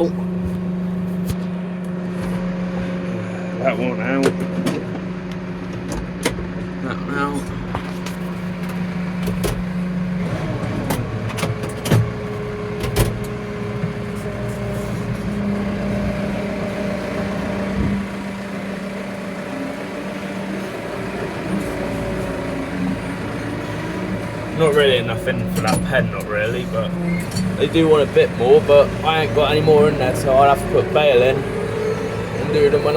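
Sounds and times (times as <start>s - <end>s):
tractor engine running: 0.0s - 32.9s.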